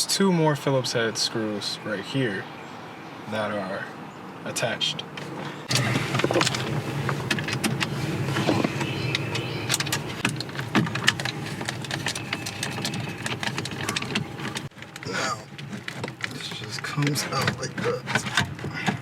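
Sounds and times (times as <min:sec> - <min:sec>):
plastic parts clicking and knocking: 0:05.7 - 0:19.0.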